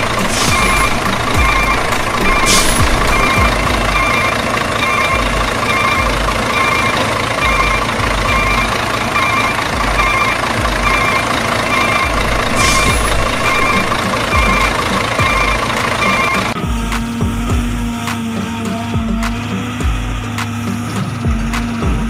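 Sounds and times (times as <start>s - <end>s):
air-brake hiss: 0.0s - 3.4s, 12.3s - 14.1s
two-tone reversing beeper: 0.0s - 16.9s
engine hum: 0.0s - 22.0s.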